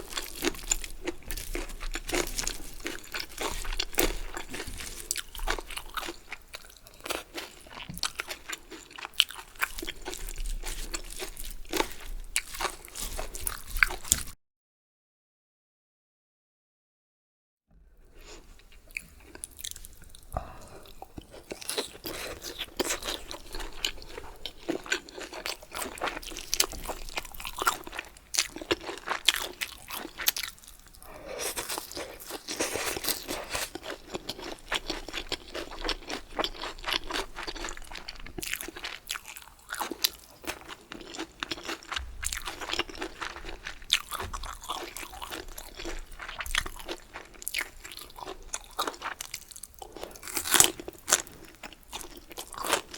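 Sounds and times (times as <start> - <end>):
chewing crunchy food: 0.0 - 14.4, 18.1 - 52.9.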